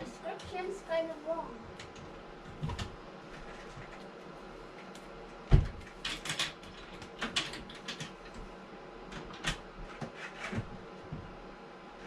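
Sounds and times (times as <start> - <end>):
hard objects clicking and clattering: 5.6 - 8.4.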